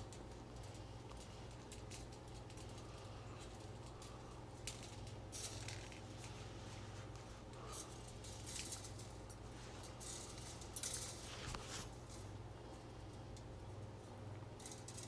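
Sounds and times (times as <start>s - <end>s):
scratching and rustling of wire: 0.0s - 15.0s
steady low hum: 0.0s - 15.0s.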